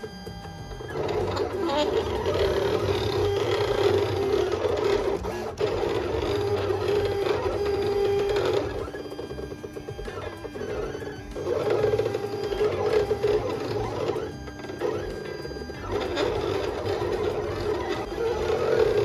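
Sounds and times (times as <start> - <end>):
cutting plotter motors whirring: 0.0 - 19.0.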